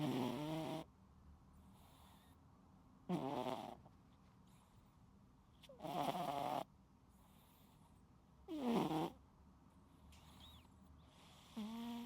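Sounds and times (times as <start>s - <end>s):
cat snoring: 0.0s - 0.9s, 3.1s - 3.8s, 5.8s - 6.7s, 8.5s - 9.2s, 11.2s - 12.0s.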